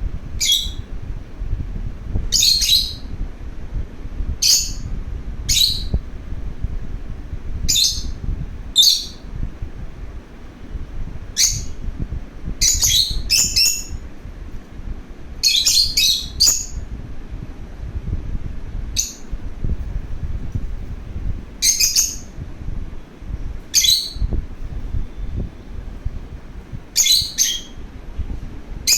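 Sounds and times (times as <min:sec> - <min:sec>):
steady low rumble: 0:00.0 - 0:28.9
lovebird chirping: 0:00.4 - 0:00.9, 0:02.3 - 0:03.1, 0:04.4 - 0:04.9, 0:05.5 - 0:06.0, 0:07.6 - 0:09.3, 0:11.4 - 0:11.8, 0:12.6 - 0:14.0, 0:15.4 - 0:16.8, 0:19.0 - 0:19.3, 0:21.6 - 0:22.3, 0:23.7 - 0:24.3, 0:26.9 - 0:27.8.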